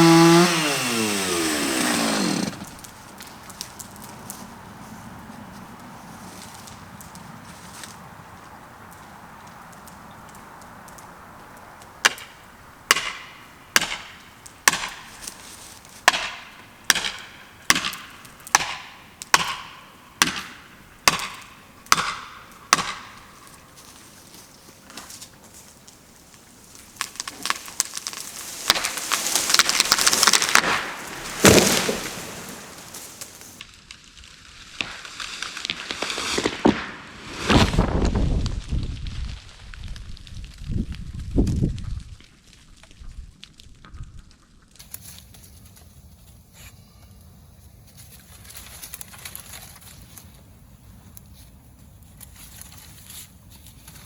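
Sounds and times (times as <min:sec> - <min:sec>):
wood being struck: 0:00.0 - 0:02.8, 0:12.9 - 0:15.1, 0:16.0 - 0:23.3
tree falling with heavy thud: 0:00.0 - 0:03.3, 0:26.8 - 0:33.6
tree trunk cracking and splintering: 0:00.0 - 0:04.5, 0:05.8 - 0:45.4.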